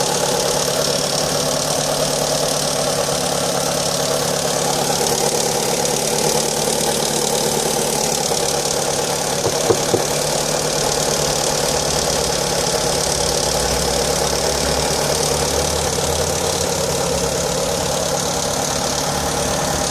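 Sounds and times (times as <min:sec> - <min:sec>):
car engine idling: 0:00.0 - 0:19.9.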